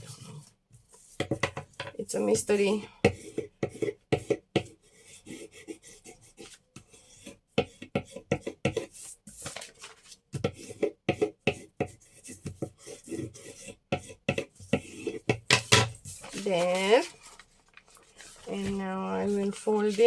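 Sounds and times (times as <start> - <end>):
paper scraping and rustling: 9.2 - 10.2, 15.0 - 20.0.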